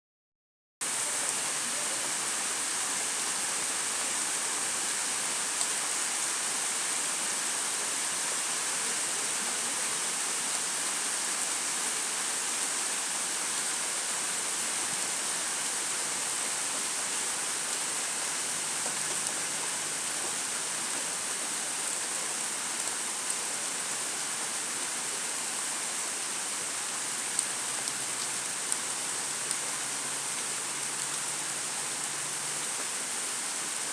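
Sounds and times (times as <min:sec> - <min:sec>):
rainfall hiss: 0:00.8 - 0:33.9.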